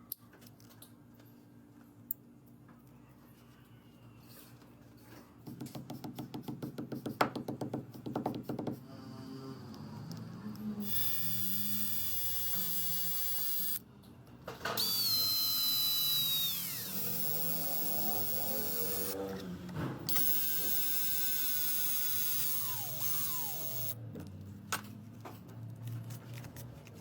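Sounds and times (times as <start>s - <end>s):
small electric motor whining: 10.8s - 13.8s, 14.8s - 19.2s, 20.1s - 24.0s.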